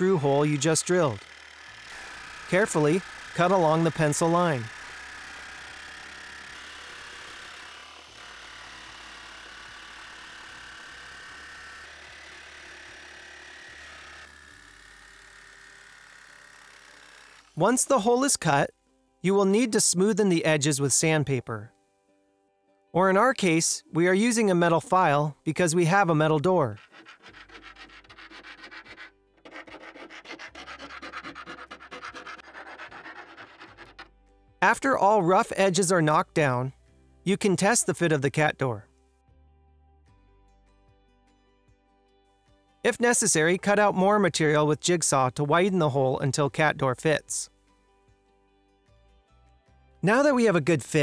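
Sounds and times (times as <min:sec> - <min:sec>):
jigsaw cutting through metal: 0:00.1 - 0:17.6, 0:26.8 - 0:34.1
metal file rasping on metal: 0:26.7 - 0:34.1.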